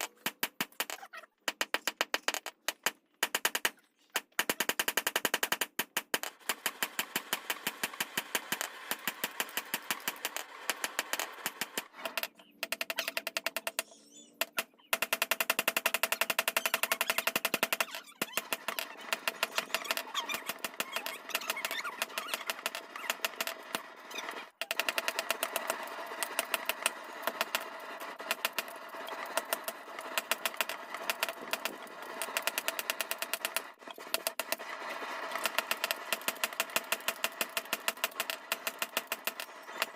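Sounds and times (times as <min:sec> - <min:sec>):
rapid mechanical knocking: 0:04.4 - 0:13.8.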